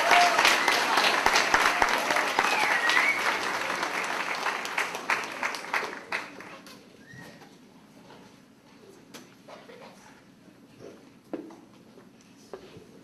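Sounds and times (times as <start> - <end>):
audience applause: 0.0 - 6.7.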